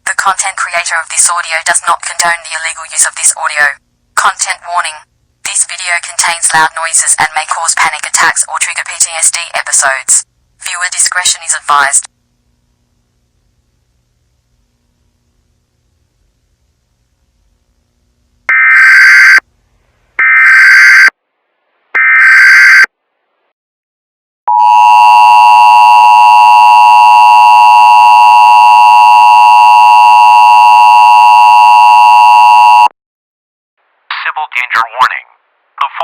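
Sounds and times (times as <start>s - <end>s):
steady attention tone: 24.5s - 32.9s.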